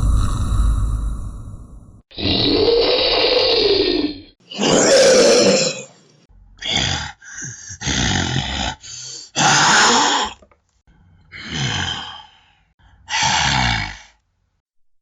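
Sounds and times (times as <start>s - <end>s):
monster roar: 0.0s - 1.2s, 2.1s - 6.0s, 6.6s - 10.4s, 11.3s - 12.3s, 13.1s - 14.1s
monster growls and grunts: 0.0s - 1.5s, 2.1s - 6.0s, 6.6s - 10.4s, 11.3s - 14.2s.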